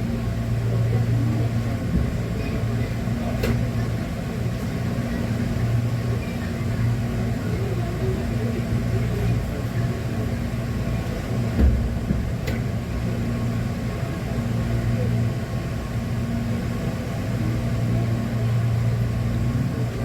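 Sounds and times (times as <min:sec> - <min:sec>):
electric train car hum and rumble: 0:00.0 - 0:20.0
low thump: 0:11.6 - 0:12.6.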